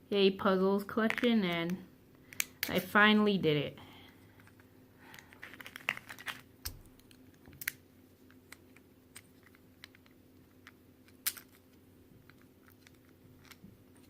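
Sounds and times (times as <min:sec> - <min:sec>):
plastic puzzle pieces clicking: 0:08.4 - 0:11.6, 0:12.2 - 0:14.0.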